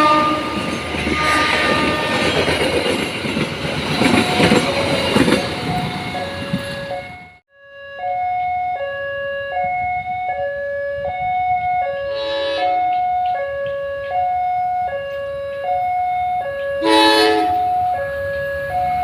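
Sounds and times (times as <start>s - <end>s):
two-tone crossing alarm: 3.9s - 19.0s.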